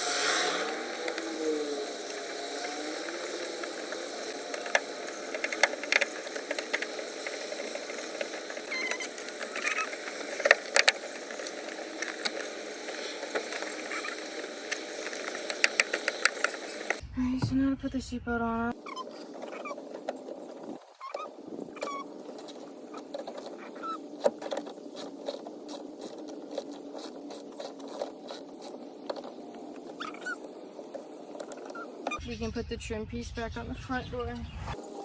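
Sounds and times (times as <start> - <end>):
steady hiss: 0.0 - 17.1.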